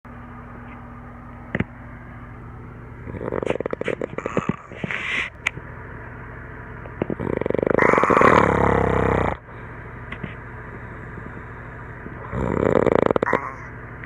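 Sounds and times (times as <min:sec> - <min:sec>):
steady low hum: 0:00.0 - 0:14.0
man snoring: 0:03.0 - 0:04.9, 0:07.1 - 0:09.4, 0:12.2 - 0:13.7.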